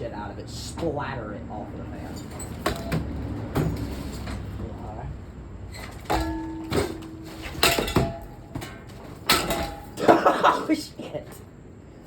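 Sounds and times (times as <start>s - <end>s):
sharp knocks and clatters: 5.8s - 10.1s.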